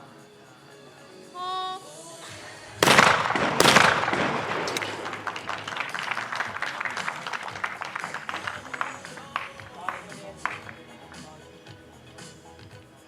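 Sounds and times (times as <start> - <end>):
shotgun shots: 2.7 - 6.5
applause: 4.0 - 11.4.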